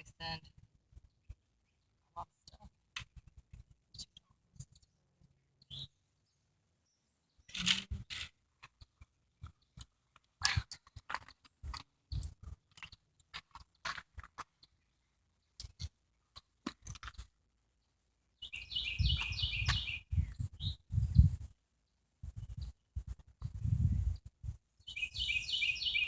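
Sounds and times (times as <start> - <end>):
crunching and clicking: 7.5 - 14.8
bird chirping rapidly: 18.4 - 20.8, 24.9 - 26.0.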